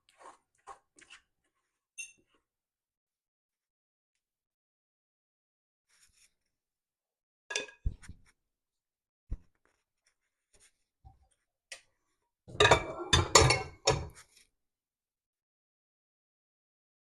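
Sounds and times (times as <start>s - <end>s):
utensils knocking and scraping dishes: 12.5s - 14.2s.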